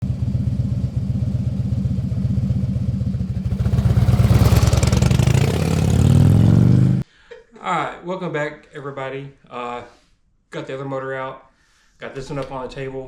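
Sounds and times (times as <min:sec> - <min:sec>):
motorcycle engine running: 0:00.0 - 0:07.0.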